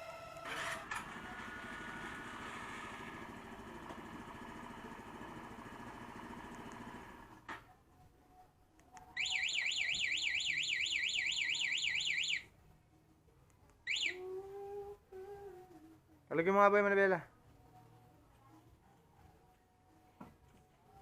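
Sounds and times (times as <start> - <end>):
motorcycle engine running: 1.0 - 7.5
warbling alarm siren: 9.2 - 12.4, 13.9 - 14.2.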